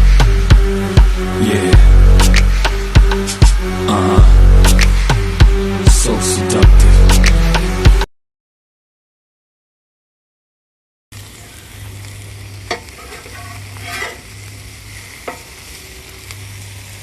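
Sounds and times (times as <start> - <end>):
food sizzling in a pan: 0.0 - 5.9, 11.1 - 17.0.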